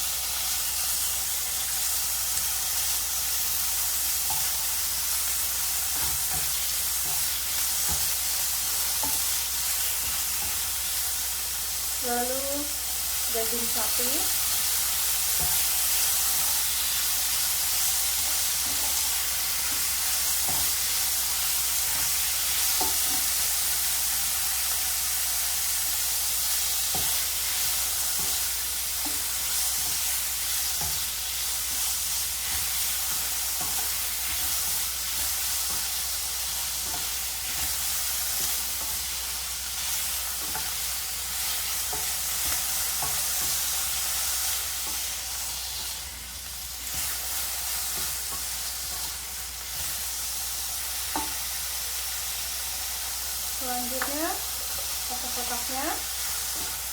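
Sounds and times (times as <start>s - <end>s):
meat sizzling in a wok: 0.0s - 56.9s.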